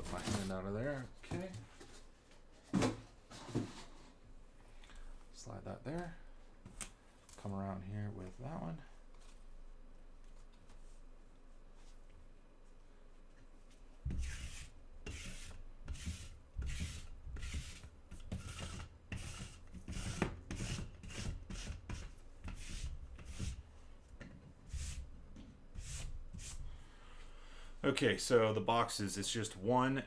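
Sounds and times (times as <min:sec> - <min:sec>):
cardboard boxes scraping on table: 0:00.0 - 0:00.6.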